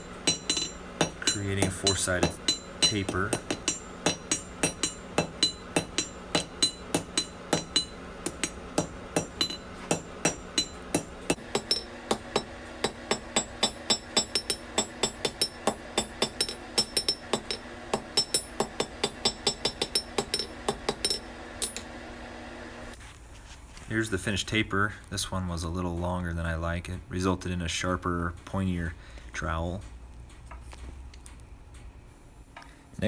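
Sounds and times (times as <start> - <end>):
hammer ringing on anvil: 0.0 - 21.9.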